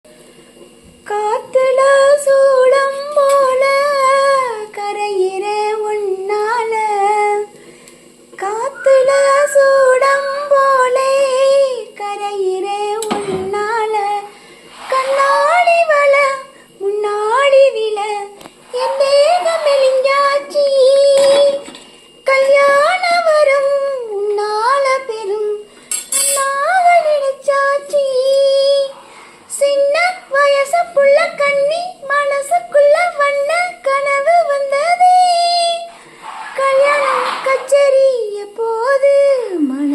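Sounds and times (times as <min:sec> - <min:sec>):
woman singing: 0:01.0 - 0:07.6, 0:08.4 - 0:39.9
high voice holding sliding notes: 0:13.6 - 0:21.7, 0:35.2 - 0:39.9.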